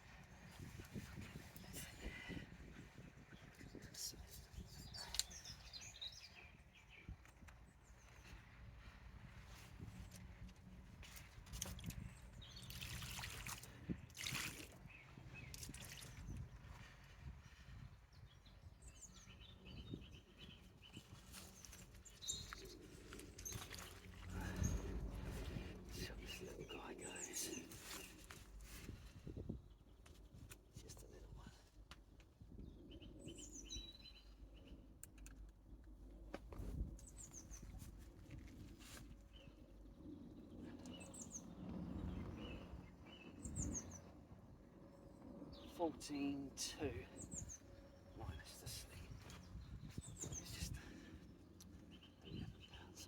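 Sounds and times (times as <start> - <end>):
small birds chirping: 0.0 - 36.2, 36.8 - 44.2, 45.0 - 53.0
low rumble: 22.7 - 26.6.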